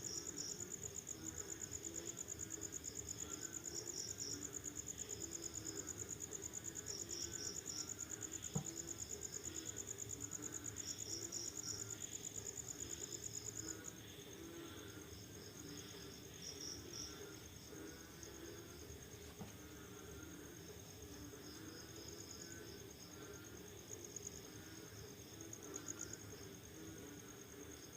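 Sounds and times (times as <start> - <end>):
cricket chirping: 0.0 - 27.9
crickets trilling: 0.0 - 27.9.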